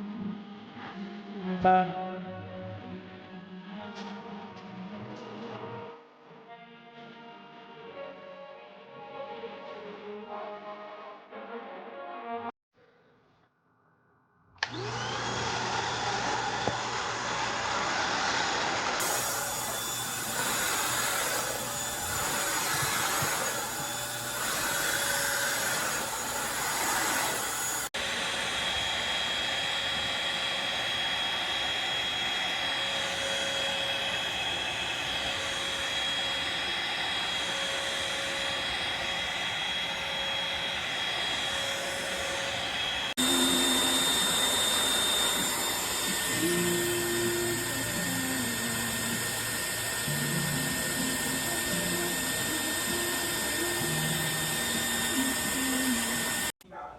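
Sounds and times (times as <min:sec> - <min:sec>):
stick vacuum running: 0:14.6 - 0:56.6.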